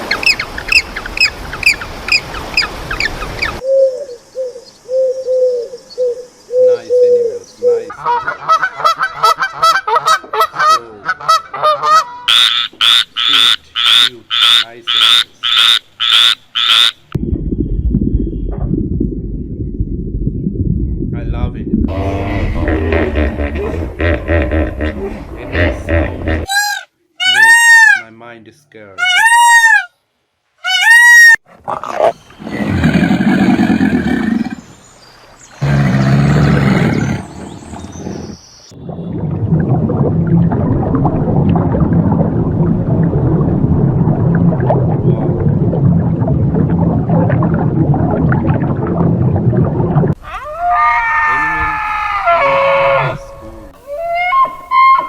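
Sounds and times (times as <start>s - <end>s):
harsh croaking calls: 6.6s - 17.2s, 25.6s - 28.1s, 29.0s - 30.0s, 30.6s - 34.8s, 35.6s - 38.5s, 50.2s - 55.0s
large animal roaring: 21.9s - 26.3s, 31.6s - 34.6s, 35.6s - 38.2s.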